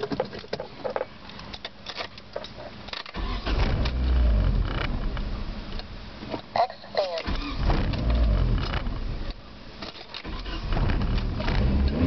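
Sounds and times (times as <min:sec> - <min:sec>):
car engine cranking and starting: 0:03.0 - 0:05.7, 0:07.1 - 0:09.4, 0:10.0 - 0:12.0.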